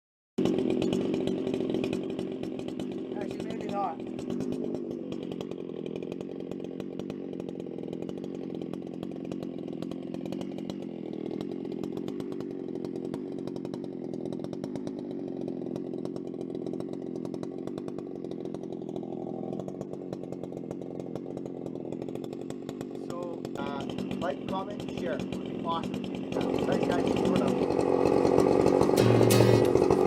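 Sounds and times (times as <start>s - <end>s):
chainsaw running: 0.4s - 30.0s.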